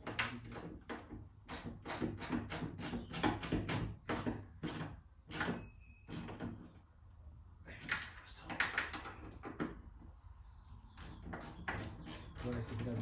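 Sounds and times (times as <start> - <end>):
ratchet spanner clicking: 11.0 - 13.0.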